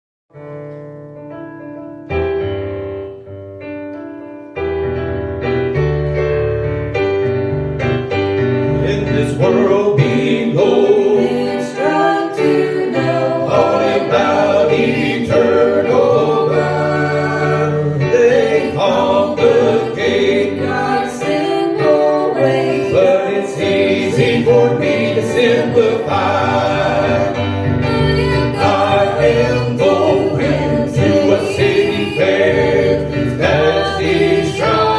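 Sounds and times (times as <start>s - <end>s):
keyboard and band accompaniment: 0.3s - 34.9s
gospel group singing in harmony: 8.7s - 34.9s.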